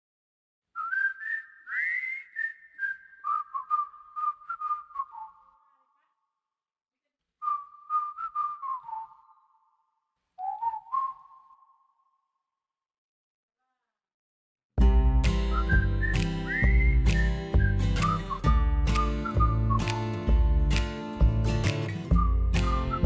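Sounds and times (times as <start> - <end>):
whistle-like tune: 0.8 - 5.7, 7.4 - 9.6, 10.4 - 12.2, 15.3 - 20.3, 21.9 - 23.0.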